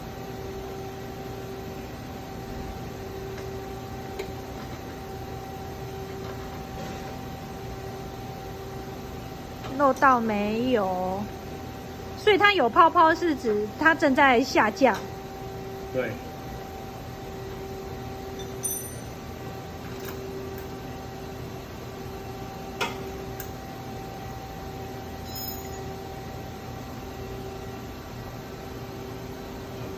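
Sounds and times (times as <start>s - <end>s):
machine hum with hiss: 0.0s - 29.9s.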